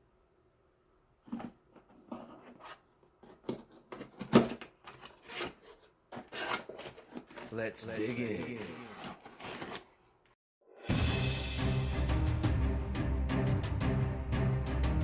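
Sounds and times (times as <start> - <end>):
cardboard box scraping and rubbing: 1.3 - 10.0.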